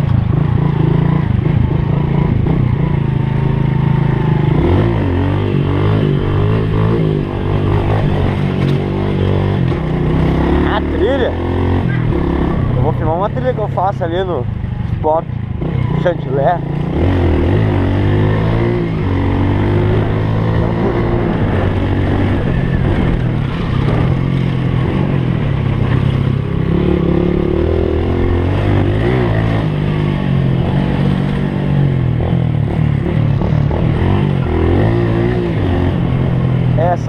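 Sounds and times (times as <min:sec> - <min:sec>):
motorcycle engine revving: 0:00.0 - 0:37.0
wind noise: 0:16.9 - 0:37.0.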